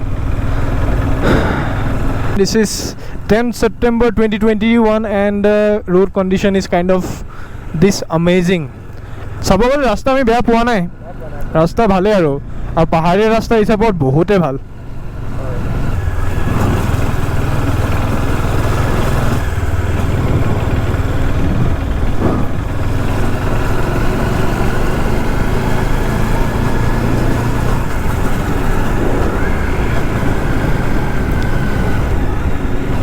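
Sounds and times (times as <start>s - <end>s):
noisy rush: 0.0s - 4.0s, 16.2s - 33.0s
motorcycle engine running: 0.0s - 13.7s, 14.5s - 33.0s.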